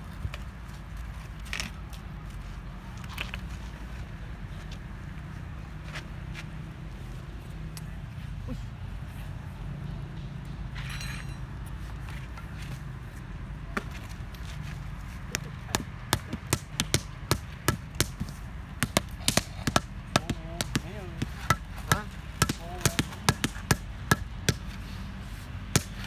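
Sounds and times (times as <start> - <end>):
tool tapping on paving stone: 15.3 - 24.8, 25.7 - 26.0.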